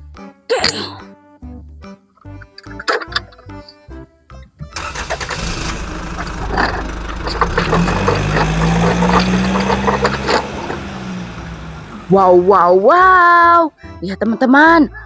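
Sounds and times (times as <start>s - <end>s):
vehicle engine starting and running: 4.6s - 13.6s.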